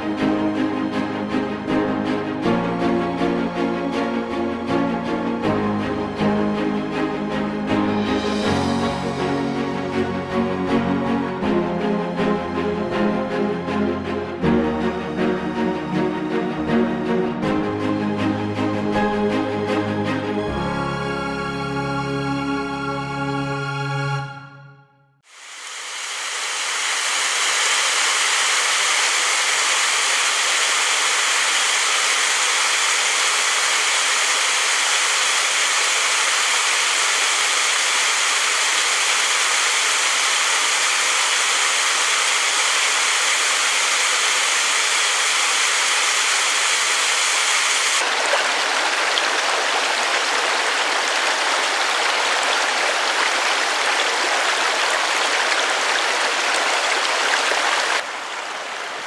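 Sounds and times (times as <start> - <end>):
stream water rushing: 25.3 - 59.0.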